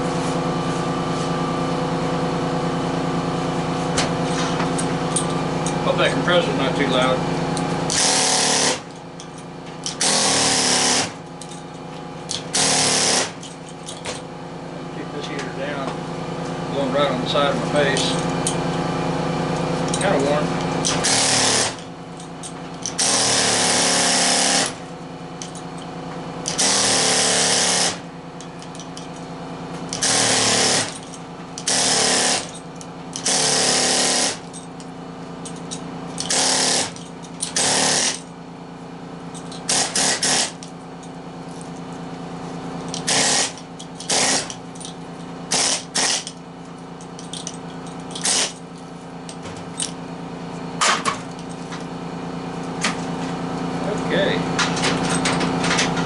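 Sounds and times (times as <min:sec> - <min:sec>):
shop equipment humming: 0:00.0 - 0:56.0
air tool bursts on metal: 0:07.9 - 0:08.9, 0:09.9 - 0:11.2, 0:12.5 - 0:13.4, 0:20.8 - 0:21.8, 0:23.0 - 0:24.8, 0:26.4 - 0:28.0, 0:30.0 - 0:31.0, 0:31.6 - 0:32.5, 0:33.2 - 0:34.4, 0:36.2 - 0:38.3, 0:39.7 - 0:40.6, 0:43.0 - 0:44.6, 0:45.5 - 0:46.4, 0:48.2 - 0:48.6.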